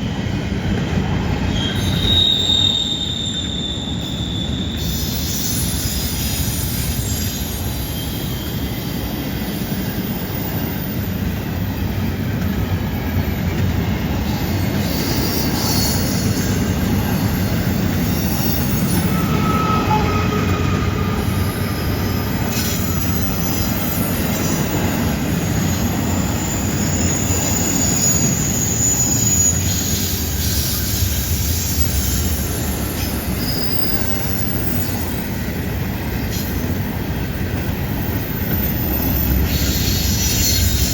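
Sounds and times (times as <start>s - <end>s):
train wheels rumbling on rail: 0.0s - 40.9s
flange squeals: 1.6s - 11.4s, 13.3s - 35.2s.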